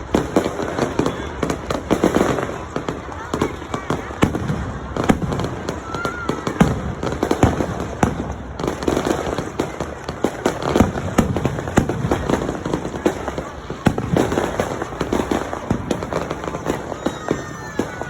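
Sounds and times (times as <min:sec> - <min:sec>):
fireworks bangs and pops: 0:00.0 - 0:18.0
firework whistle: 0:05.0 - 0:18.0.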